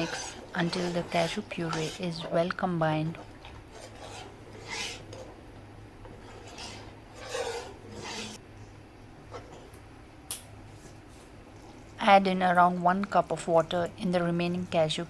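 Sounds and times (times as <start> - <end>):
utensil stirring thick gravy: 0.0 - 8.5, 9.2 - 9.8.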